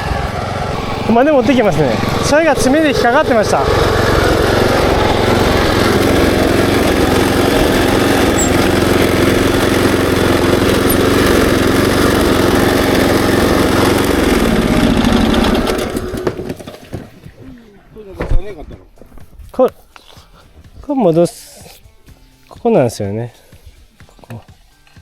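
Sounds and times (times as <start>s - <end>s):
small engine running: 0.0s - 16.8s.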